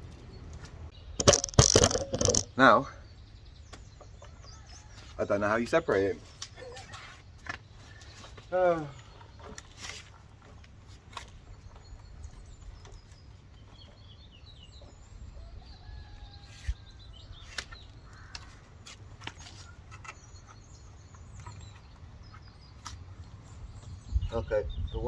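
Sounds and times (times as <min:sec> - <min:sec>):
faint bird calls: 0:14.8 - 0:23.0.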